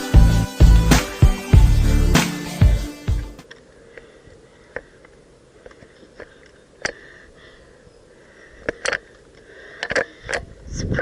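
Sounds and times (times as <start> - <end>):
faint steady background noise: 3.4 - 11.0.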